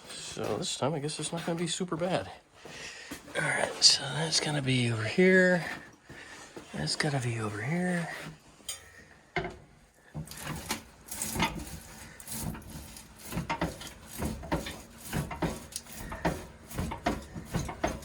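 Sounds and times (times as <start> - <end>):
metal parts knocking and scraping: 10.2 - 18.0.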